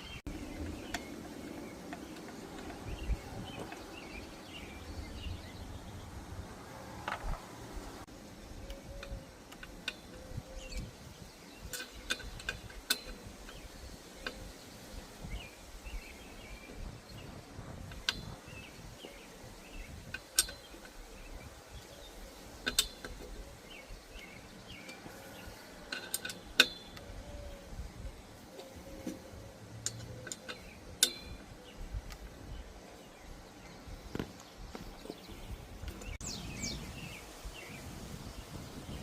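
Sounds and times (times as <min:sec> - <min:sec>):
birds chirping: 0:00.0 - 0:39.0
metallic clicks and clinks: 0:25.8 - 0:27.0.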